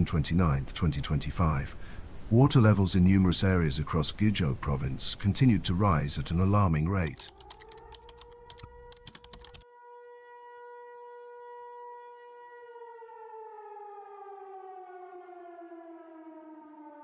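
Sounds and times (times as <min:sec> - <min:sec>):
warning siren wailing: 0:07.3 - 0:17.0.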